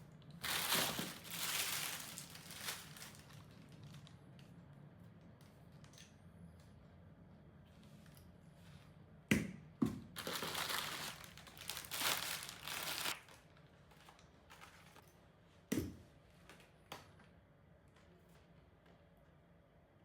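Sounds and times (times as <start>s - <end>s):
packaging thumps: 0.4s - 3.3s, 10.2s - 13.2s
packaging crinkling and rustling: 0.4s - 4.5s, 10.2s - 15.1s.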